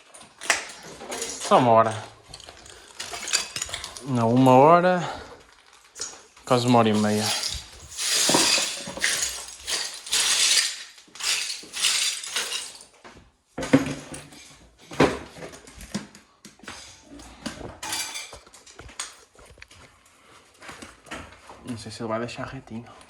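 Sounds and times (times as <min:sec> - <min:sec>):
hard pieces clinking and scraping: 0:00.1 - 0:04.6, 0:05.6 - 0:13.0.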